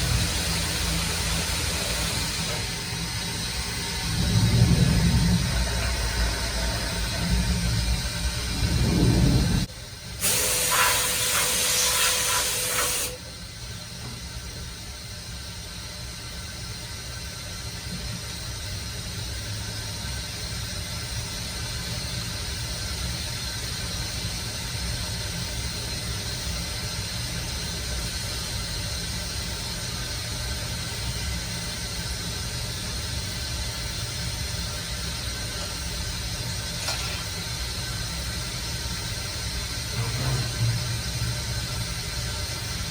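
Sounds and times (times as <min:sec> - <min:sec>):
low machine hum: 0:00.0 - 0:10.2, 0:28.9 - 0:42.9
loud hiss: 0:06.8 - 0:13.2.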